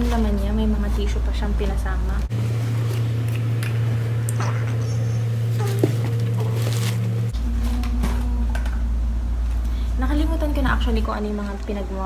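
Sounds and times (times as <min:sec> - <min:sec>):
loud steady low hum: 0:00.0 - 0:12.0
tissue paper rustling: 0:05.5 - 0:07.2.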